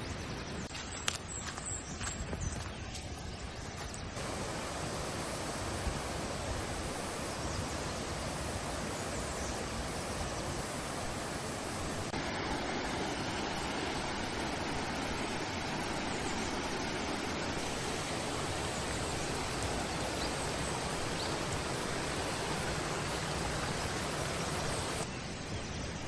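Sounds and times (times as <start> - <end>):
waterfall rushing: 4.2 - 12.2, 17.6 - 25.1.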